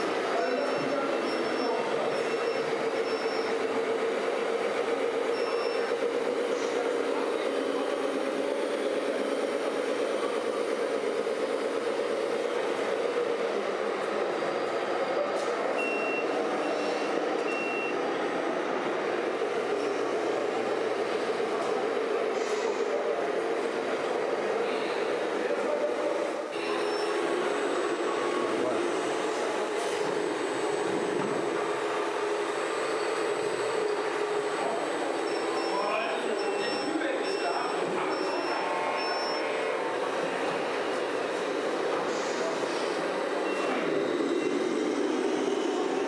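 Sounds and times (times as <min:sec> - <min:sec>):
reversing beeper: 0:35.3 - 0:39.8.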